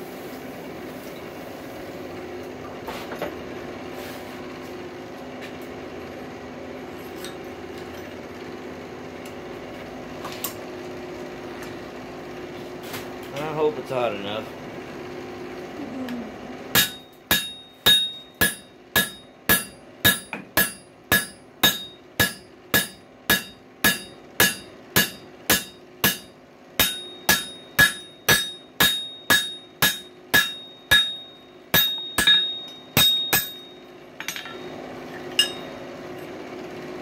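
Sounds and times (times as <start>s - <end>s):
hammer striking steel on anvil: 16.7s - 35.8s.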